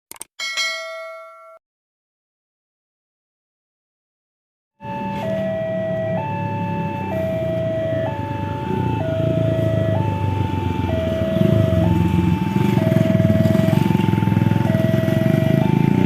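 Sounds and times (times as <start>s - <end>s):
two-tone crossing warning alarm: 4.8s - 16.0s.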